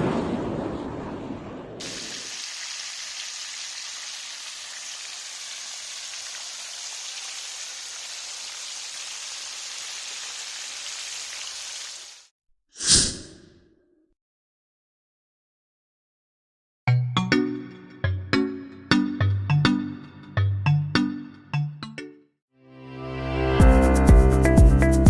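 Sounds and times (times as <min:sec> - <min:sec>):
chicken frying in oil: 0:01.8 - 0:12.3.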